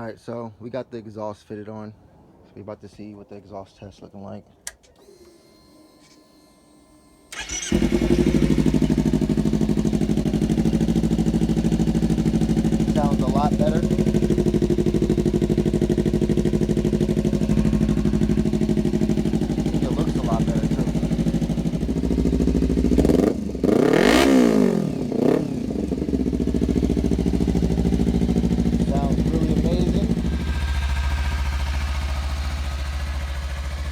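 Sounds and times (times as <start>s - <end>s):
motorcycle starter cranking: 4.7s - 24.4s, 25.8s - 33.9s
motorcycle engine idling: 7.3s - 33.9s.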